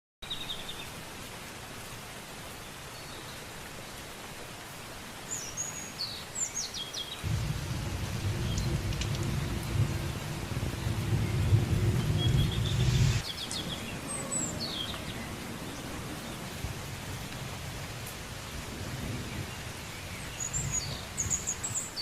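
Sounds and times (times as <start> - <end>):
rain: 0.2 - 22.0
steady hiss: 7.2 - 13.8
thunder rumbling: 7.2 - 21.4
high bird chirps: 10.7 - 14.9.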